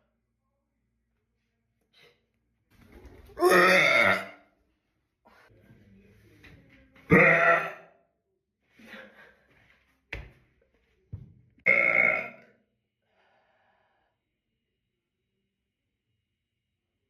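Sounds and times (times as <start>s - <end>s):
woman burping loudly: 3.4s - 4.5s, 7.1s - 8.0s, 11.6s - 12.5s.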